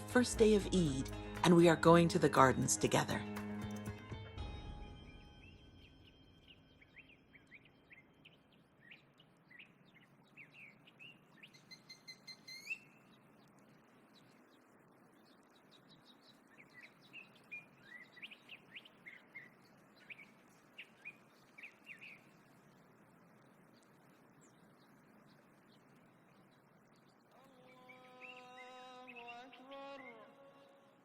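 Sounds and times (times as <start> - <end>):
soft ambient hiss: 4.4 - 31.0
rising whistled bird note: 4.8 - 9.0, 11.4 - 13.1
small birds chirping: 5.3 - 30.9.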